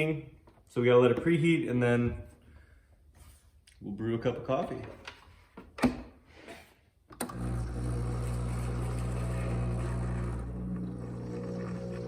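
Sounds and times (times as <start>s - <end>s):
coffee maker humming: 7.2s - 12.0s.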